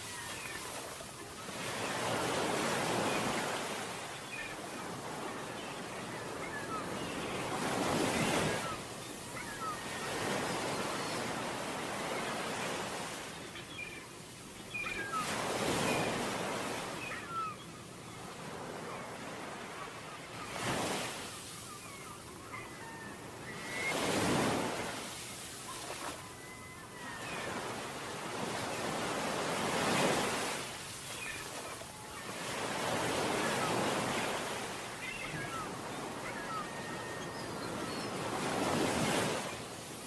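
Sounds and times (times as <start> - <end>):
sea waves breaking on beach: 0.0 - 14.0, 23.6 - 40.0.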